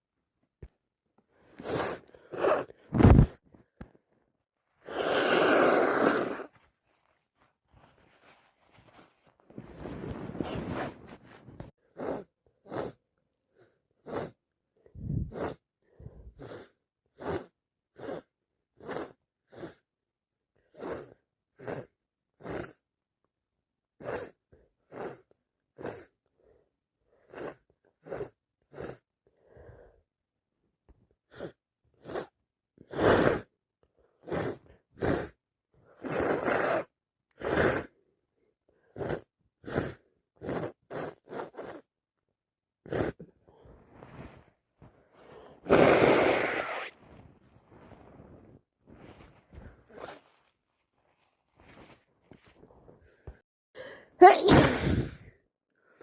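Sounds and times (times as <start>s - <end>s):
person sniffing: 1.4s - 3.4s, 4.8s - 6.5s, 9.6s - 14.4s, 15.0s - 19.8s, 20.7s - 22.8s, 31.3s - 33.5s, 34.2s - 35.4s, 38.9s - 41.9s, 42.9s - 50.4s, 51.6s - 55.4s
person sneezing: 54.2s - 55.3s.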